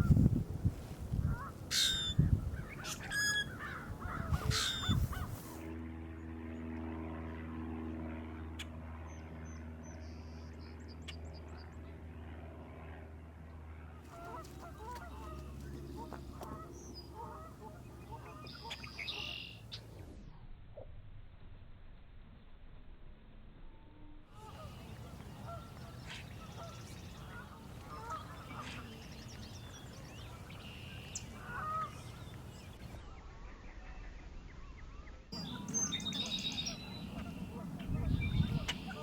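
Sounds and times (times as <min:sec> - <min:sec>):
steady low hum: 0:00.0 - 0:39.0
grackles calling: 0:01.2 - 0:05.4, 0:24.4 - 0:32.8, 0:35.4 - 0:39.0.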